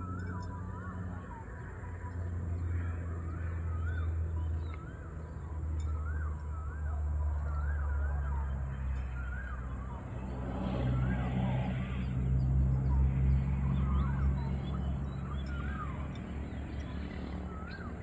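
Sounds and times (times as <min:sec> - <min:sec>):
songbird whistling: 0:13.9 - 0:18.0.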